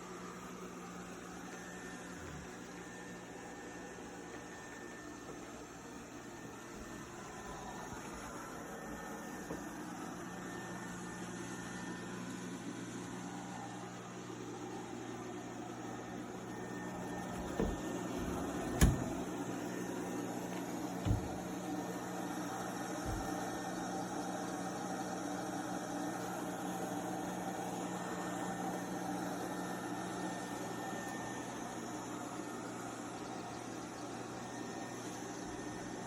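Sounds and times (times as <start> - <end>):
robot vacuum whirring: 14.7 - 36.0.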